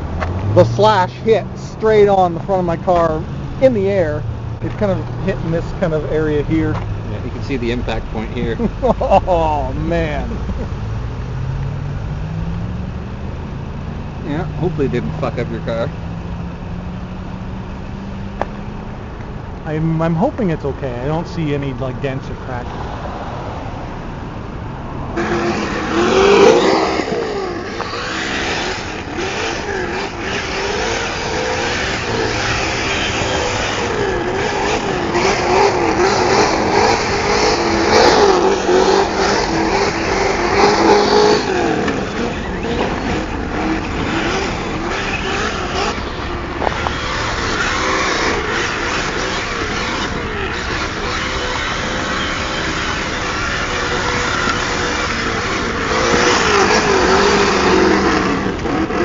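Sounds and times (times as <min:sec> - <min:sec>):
tyres scrabbling on gravel: 0:25.2 - 0:57.8
electric motor whine: 0:25.2 - 0:59.0.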